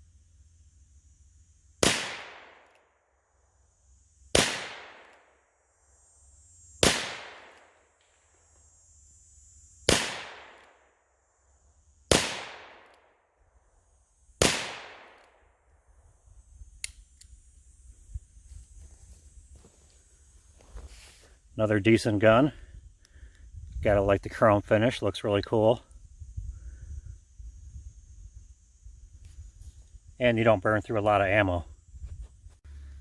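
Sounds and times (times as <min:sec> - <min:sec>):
revolver gunshots with echo: 0:01.8 - 0:02.8, 0:04.3 - 0:05.2, 0:06.8 - 0:07.8, 0:09.9 - 0:10.9, 0:12.1 - 0:13.1, 0:14.4 - 0:15.4.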